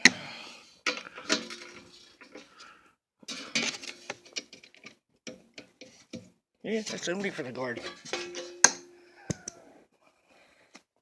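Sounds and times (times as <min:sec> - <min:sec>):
metal tools clinking: 0:07.8 - 0:08.8.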